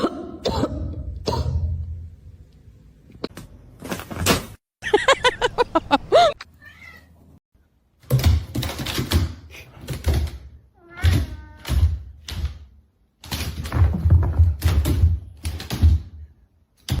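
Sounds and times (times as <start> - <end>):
cat meowing: 6.6 - 7.2
knocks and thumps: 13.3 - 16.3.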